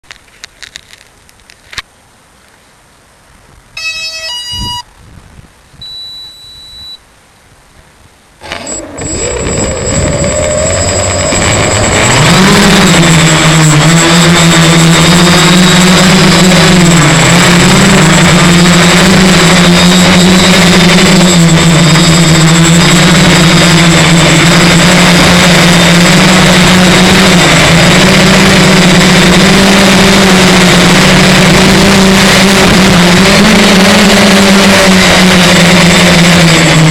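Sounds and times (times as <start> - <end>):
short electronic beeps: 3.8 - 4.9, 5.8 - 7.0, 19.6 - 25.3
drone motors and propellers droning: 8.4 - 36.9.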